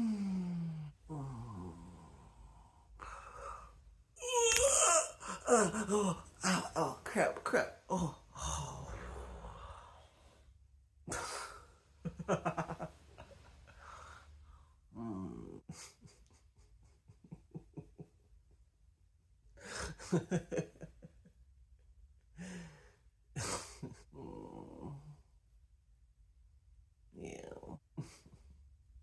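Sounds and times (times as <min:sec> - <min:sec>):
close breathing gasps and sighs: 0:00.0 - 0:06.7, 0:08.0 - 0:10.5, 0:13.1 - 0:14.9, 0:22.4 - 0:24.1.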